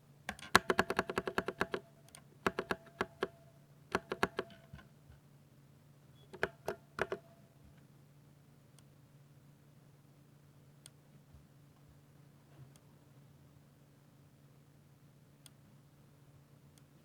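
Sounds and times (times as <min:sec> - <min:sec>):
mechanical keyboard typing: 0:00.3 - 0:01.8, 0:02.5 - 0:03.3, 0:03.9 - 0:04.6, 0:06.3 - 0:07.2.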